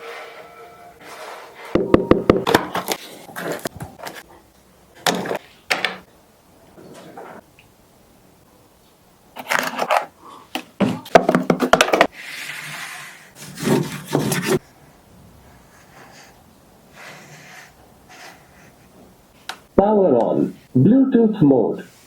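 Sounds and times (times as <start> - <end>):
contents sliding against cardboard: 0.0 - 1.8, 12.1 - 14.6
cardboard packaging rubbing: 12.1 - 14.6.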